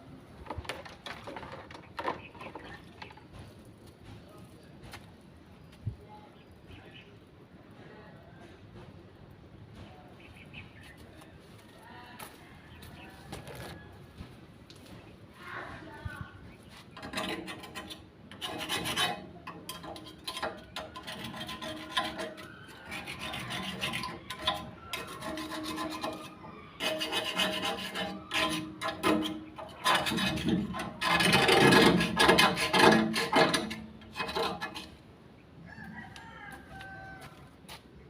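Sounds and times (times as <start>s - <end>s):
scraping on a metal pot: 16.9s - 35.0s.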